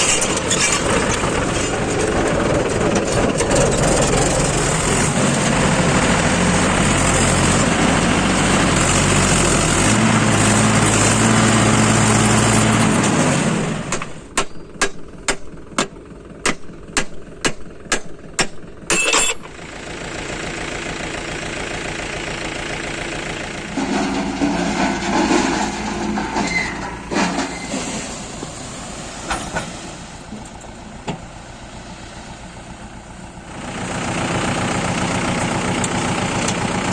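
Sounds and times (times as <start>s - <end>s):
heavy diesel engines running: 0.0s - 36.9s.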